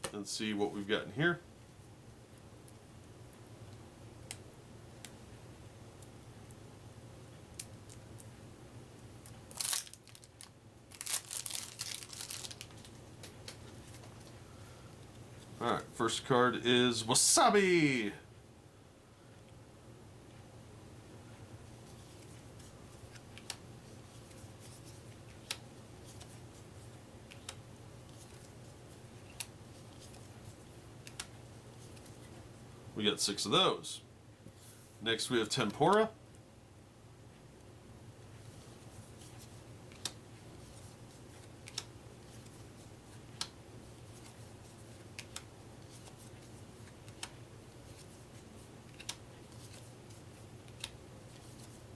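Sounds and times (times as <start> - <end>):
faint steady hum: 0.0 - 51.9
plastic wrapping crinkling: 9.5 - 14.3.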